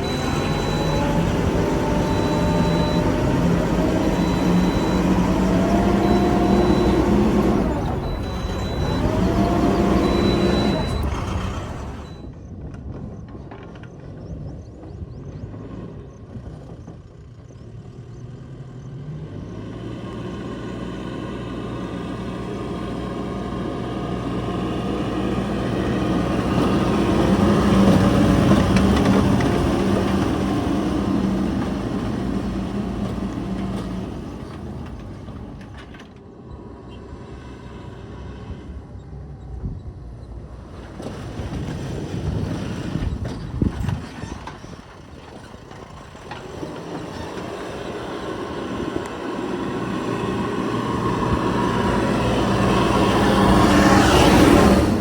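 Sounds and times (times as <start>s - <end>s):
diesel engine revving under load: 0.0s - 12.3s, 17.7s - 55.0s
reversing alarm beeping: 0.0s - 12.4s.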